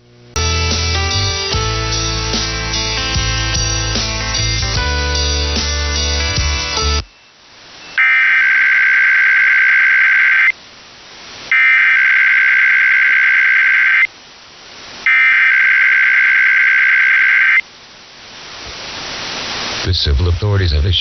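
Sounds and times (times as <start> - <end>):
two-tone digital data bursts: 7.0 - 10.6, 11.5 - 14.1, 15.1 - 17.6.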